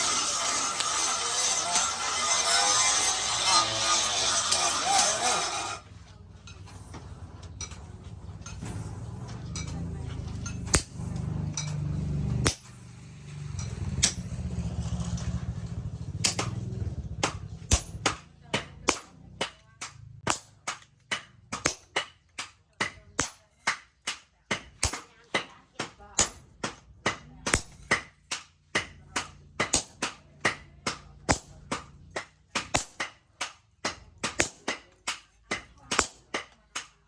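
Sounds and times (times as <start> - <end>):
hammer striking steel on anvil: 0.0 - 5.8, 6.4 - 37.0
low steady rumble: 5.8 - 19.0.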